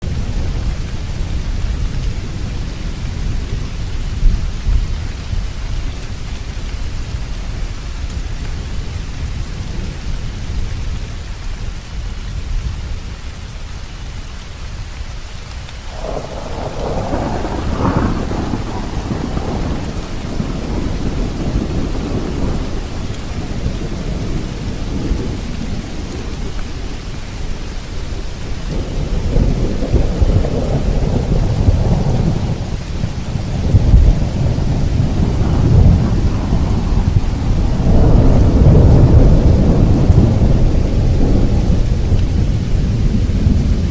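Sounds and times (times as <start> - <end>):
steady rain: 0.0 - 43.9
rolling thunder: 15.8 - 43.9.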